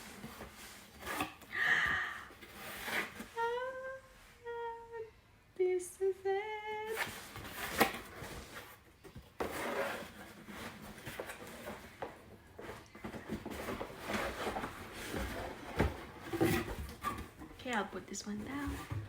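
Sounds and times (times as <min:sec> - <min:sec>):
cardboard packaging rustling: 0:00.0 - 0:01.6, 0:06.9 - 0:19.0.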